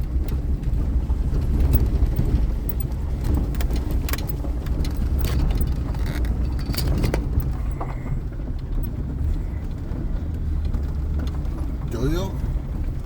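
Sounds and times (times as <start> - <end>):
car low rumble: 0.0 - 13.0
sharp clicks and ticks: 1.4 - 7.9.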